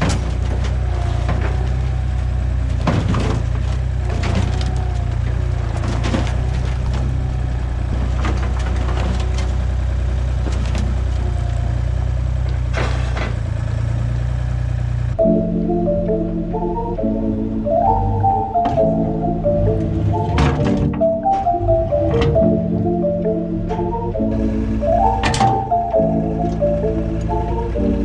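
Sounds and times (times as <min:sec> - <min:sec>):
sharp cracks and crunches: 0:00.0 - 0:13.4
heavy engine running: 0:00.0 - 0:28.0.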